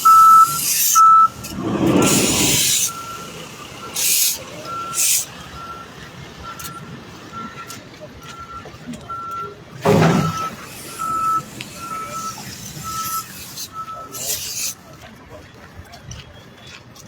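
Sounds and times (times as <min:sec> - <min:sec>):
vehicle reversing alarm beeping: 0:00.0 - 0:14.5
rush of noise: 0:01.3 - 0:03.6.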